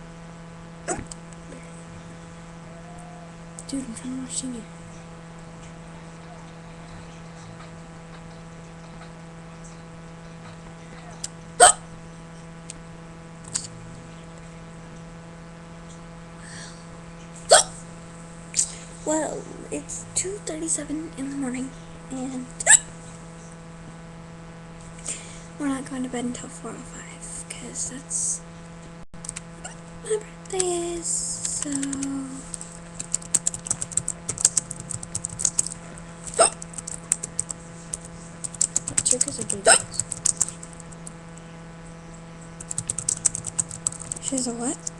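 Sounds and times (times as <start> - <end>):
low electrical hum: 0.0 - 44.9
person hiccuping: 0.9 - 1.1, 11.6 - 11.9, 17.5 - 17.8, 22.6 - 22.9, 36.3 - 36.6, 39.7 - 40.0
computer keyboard typing: 31.4 - 41.1, 42.6 - 44.9.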